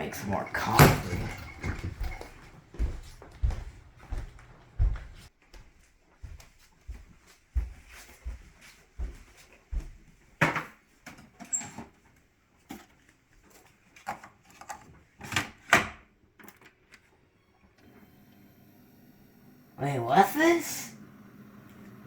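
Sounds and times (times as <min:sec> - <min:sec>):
cupboard doors and dishes clattering: 0:00.1 - 0:03.0
low thumps like footsteps: 0:01.0 - 0:05.3.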